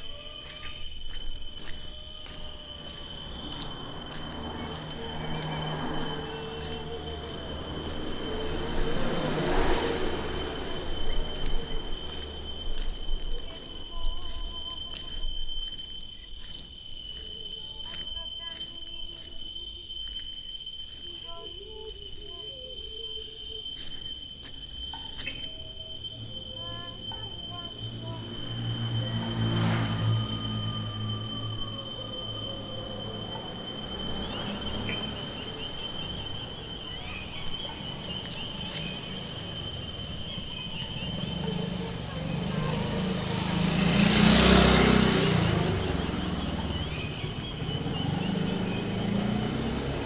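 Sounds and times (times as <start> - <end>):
crickets trilling: 0.0 - 50.0
quick high insect chirps: 0.0 - 50.0.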